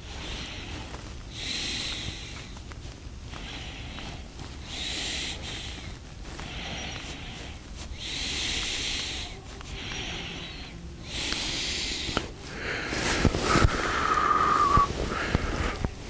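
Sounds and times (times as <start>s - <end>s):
person blowing on embers: 11.1s - 16.0s
high whistling tone: 13.5s - 15.2s.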